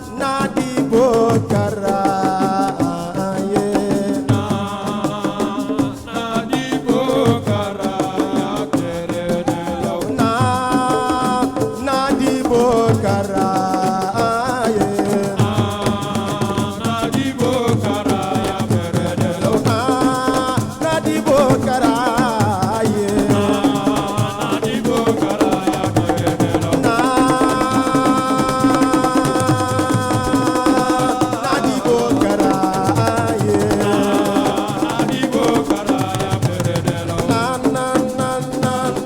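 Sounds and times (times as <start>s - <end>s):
drums playing dense rhythm: 7.3s - 39.0s
person singing wavering melody: 19.4s - 39.0s.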